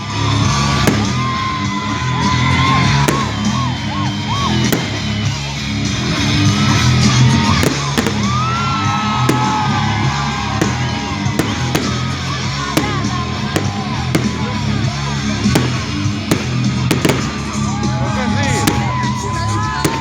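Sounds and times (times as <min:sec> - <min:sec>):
firework whistles: 0:00.0 - 0:05.6, 0:06.5 - 0:14.8, 0:15.4 - 0:20.0
firework bangs: 0:00.0 - 0:20.0
loud music with steady beat: 0:15.5 - 0:17.8.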